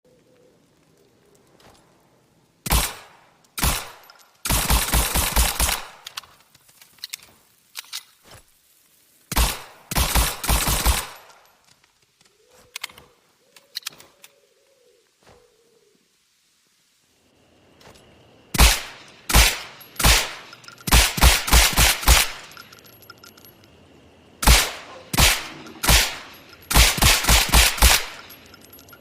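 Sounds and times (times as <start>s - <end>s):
faint clicks: 11.2s - 14.8s, 22.1s - 23.9s, 27.8s - 29.0s
suppressed pistol shots: 18.6s - 22.6s, 24.4s - 28.4s
faint ringing: 22.4s - 26.8s, 28.1s - 29.0s.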